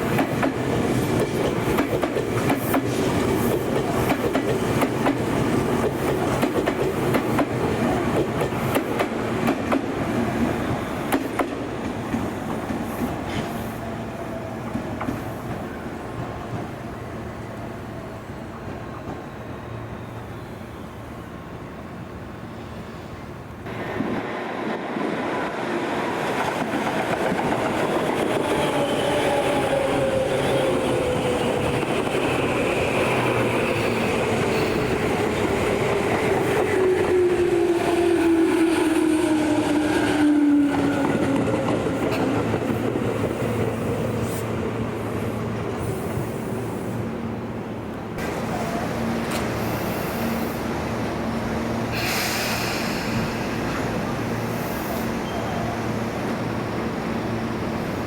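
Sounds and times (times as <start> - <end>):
wheels clacking on rails: 0.0 - 13.6, 24.0 - 44.4.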